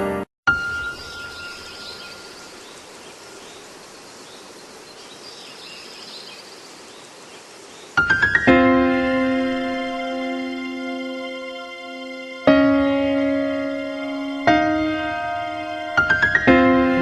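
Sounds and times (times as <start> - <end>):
rain hissing: 1.2 - 12.4
piano notes: 8.0 - 17.0.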